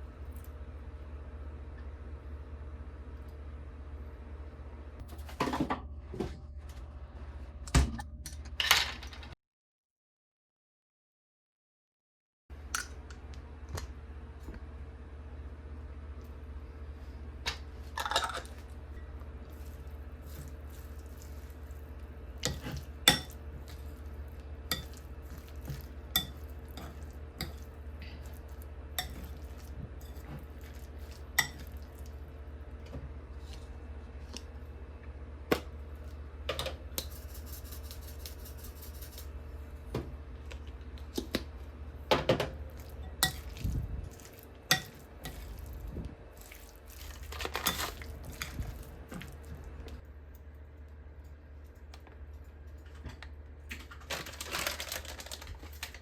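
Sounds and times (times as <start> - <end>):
utensils and dishes clinking: 22.5 - 23.8, 24.7 - 27.7.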